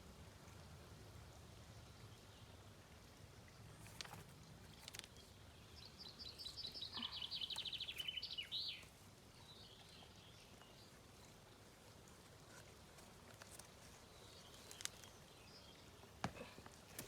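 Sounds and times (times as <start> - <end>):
low outdoor background: 0.0 - 17.0
faint clicks: 3.8 - 5.3, 12.5 - 15.2
songbird trilling: 6.0 - 8.9.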